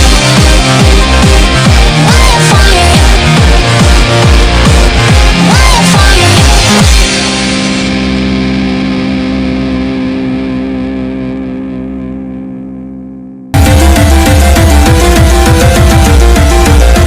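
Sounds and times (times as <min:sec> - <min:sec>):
bass-heavy electronic music: 0:00.0 - 0:17.0
distorted electric guitar chord: 0:06.8 - 0:17.0.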